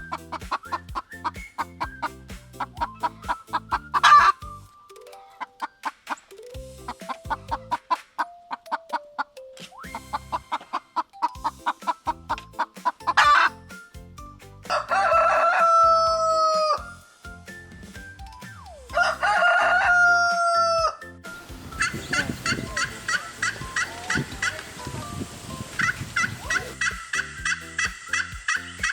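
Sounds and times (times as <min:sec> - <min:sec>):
turkey gobbling: 0:00.1 - 0:04.4, 0:06.9 - 0:13.6, 0:18.9 - 0:21.0, 0:21.6 - 0:25.0, 0:25.7 - 0:28.9
rooster crowing: 0:14.7 - 0:16.8, 0:18.9 - 0:21.0
chicken clucking: 0:21.7 - 0:25.0.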